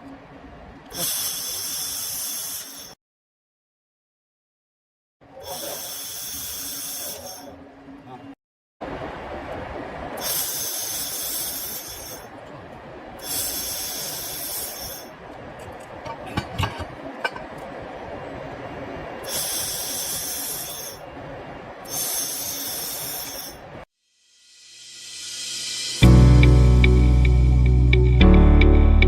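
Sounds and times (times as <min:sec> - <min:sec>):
steady background noise: 0:00.0 - 0:03.0, 0:05.2 - 0:23.9
laser welder hissing: 0:00.9 - 0:03.0, 0:05.4 - 0:07.5, 0:10.2 - 0:12.3, 0:13.2 - 0:15.1, 0:19.3 - 0:21.0, 0:21.9 - 0:23.7.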